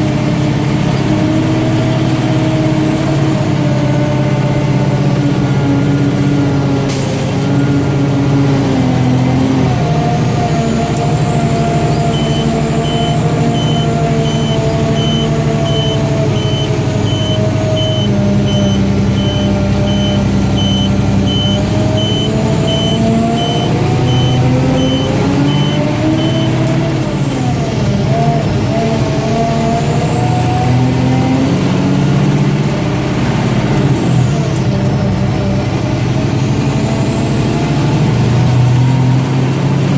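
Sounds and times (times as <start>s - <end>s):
diesel truck engine running: 0.0s - 39.9s
beeping alarm: 11.4s - 26.6s.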